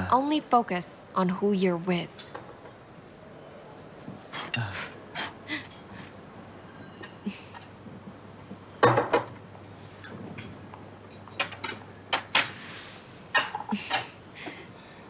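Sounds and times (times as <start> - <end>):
cutlery and tableware clinking: 8.8 - 12.6.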